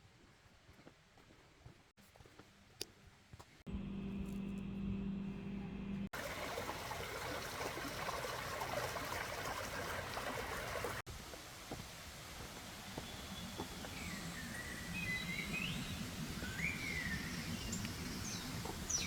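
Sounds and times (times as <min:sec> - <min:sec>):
low hum: 0:03.7 - 0:11.0
stream water rushing: 0:06.1 - 0:11.1.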